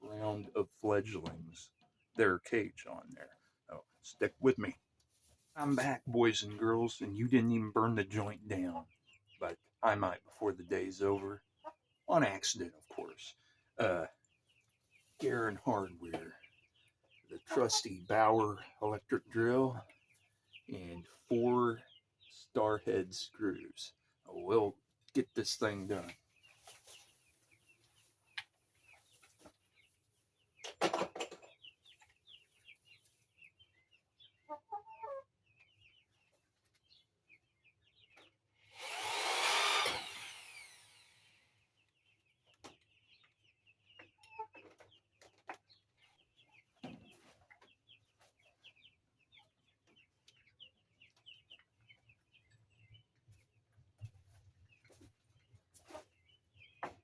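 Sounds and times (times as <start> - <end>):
chicks peeping and chirping: 0.0 - 57.0
electric drill whining: 38.7 - 41.4.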